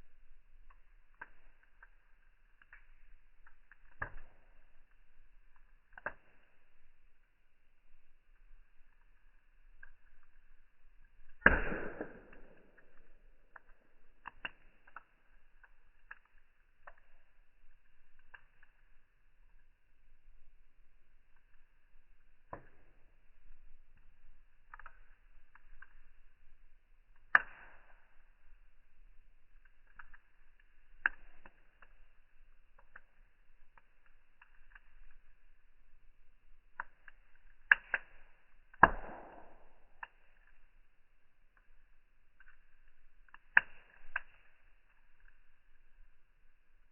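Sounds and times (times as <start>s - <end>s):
fire crackling: 0.0s - 46.9s
loud pop with whoosh: 11.4s - 12.5s.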